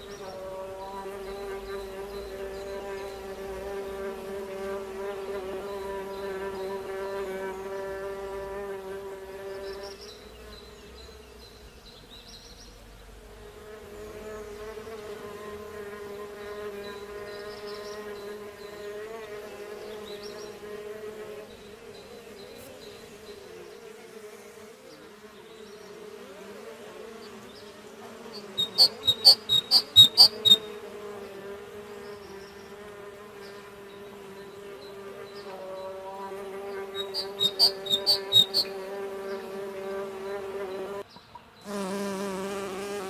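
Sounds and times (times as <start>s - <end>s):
bee buzzing in flight: 0.0s - 43.0s
faint high chirps: 28.4s - 30.8s, 37.0s - 38.7s.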